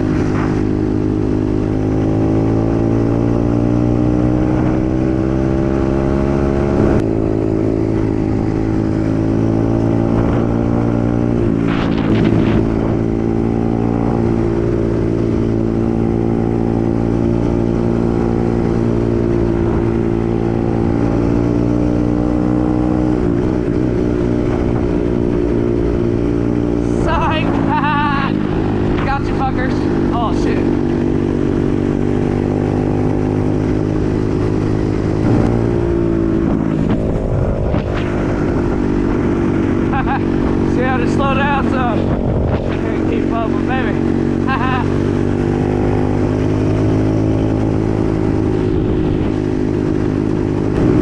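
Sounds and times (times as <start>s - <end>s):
dirt bike engine accelerating: 0.0s - 23.3s, 31.0s - 51.0s
burst of rough noise: 35.2s - 36.8s.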